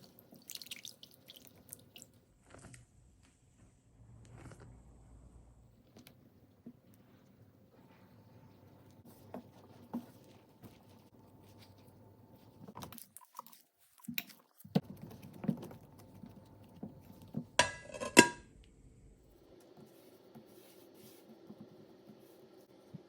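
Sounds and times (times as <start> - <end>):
cookware knocking: 17.6 - 18.4.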